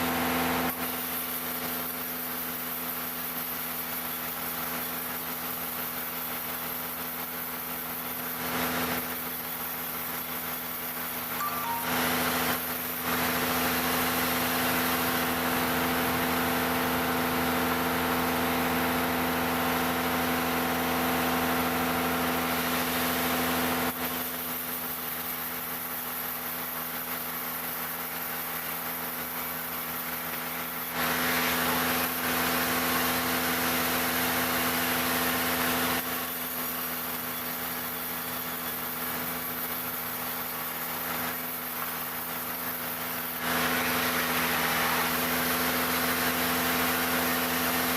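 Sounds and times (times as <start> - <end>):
wood-cutting machine sawing: 41.0 - 47.9.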